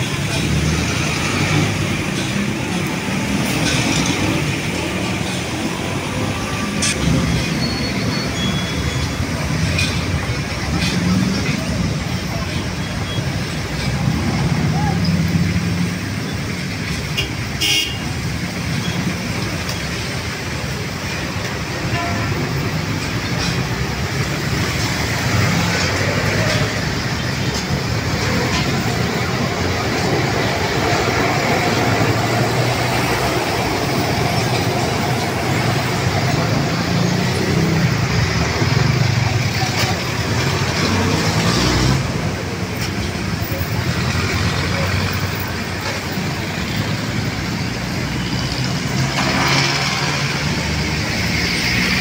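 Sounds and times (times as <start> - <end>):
road traffic engine rumble: 0.0 - 52.0
vehicle horn toot: 17.2 - 18.0.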